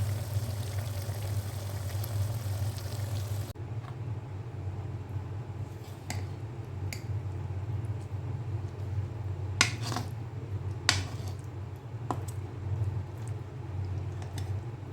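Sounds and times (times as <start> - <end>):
steady low hum: 0.0 - 3.6.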